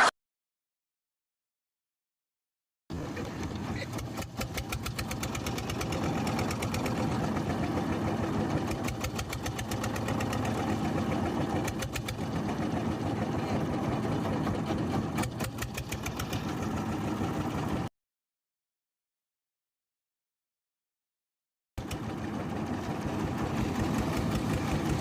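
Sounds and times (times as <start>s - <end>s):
motorboat diesel engine knocking: 2.9s - 17.9s, 21.8s - 25.0s.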